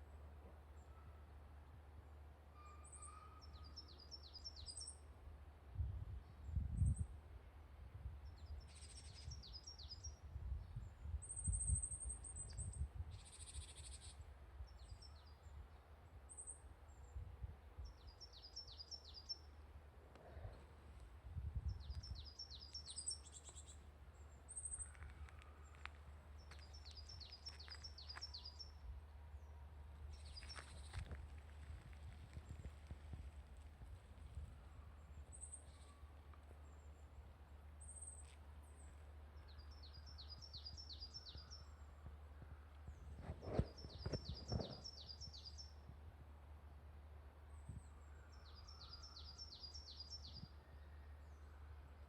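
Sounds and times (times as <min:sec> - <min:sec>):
songbirds singing: 0:02.6 - 0:05.1, 0:08.2 - 0:33.1, 0:34.2 - 0:46.0, 0:47.3 - 0:52.0
steady low rumble: 0:19.4 - 0:37.9.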